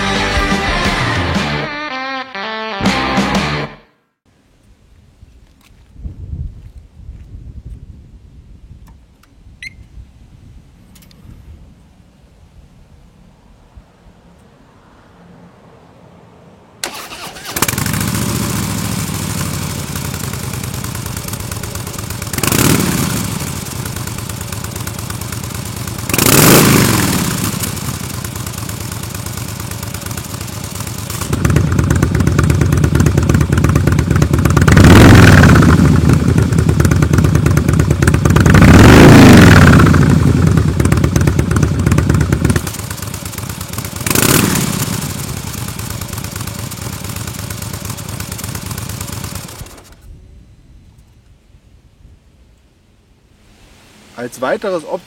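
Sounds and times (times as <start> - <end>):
motorcycle engine idling and revving: 16.5 - 50.2.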